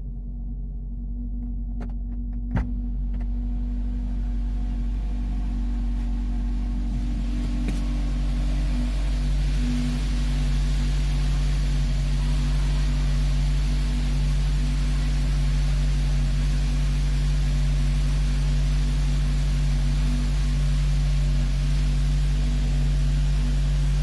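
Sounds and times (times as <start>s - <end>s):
car engine grinding drone: 0.0s - 24.0s.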